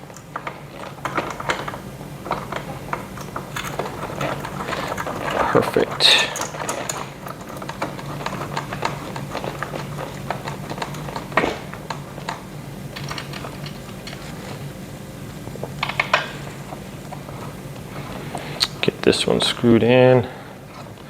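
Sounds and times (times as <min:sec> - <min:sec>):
allen key and bolts clicking: 0:00.1 - 0:14.6.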